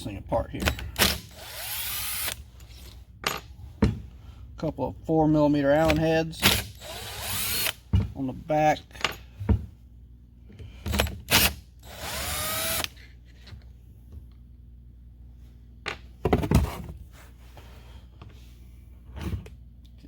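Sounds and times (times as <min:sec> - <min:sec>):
power drill spinning: 0:00.8 - 0:02.5, 0:06.4 - 0:07.8, 0:10.9 - 0:13.0.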